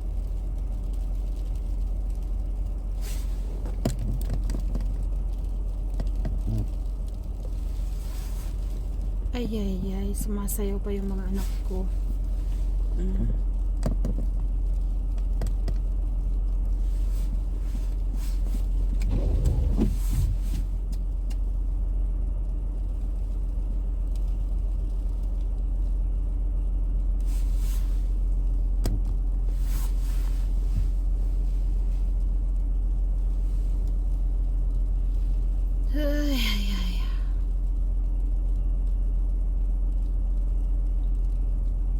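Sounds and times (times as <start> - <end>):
rustle: 0.0 - 9.4, 26.9 - 41.9
vehicle engine idling: 0.0 - 41.9.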